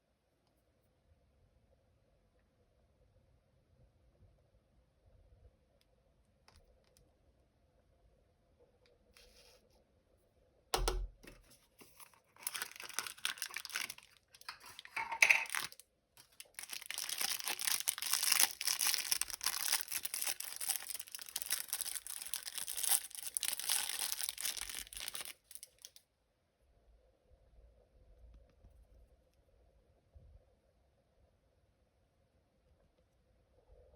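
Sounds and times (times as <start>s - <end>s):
plastic packaging crinkling and tearing: 11.3s - 26.0s.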